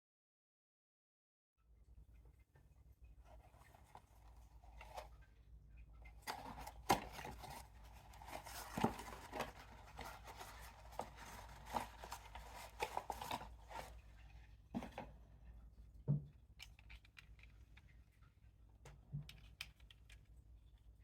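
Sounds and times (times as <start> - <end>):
cardboard and plastic packaging handled: 3.2 - 5.2, 6.1 - 15.1.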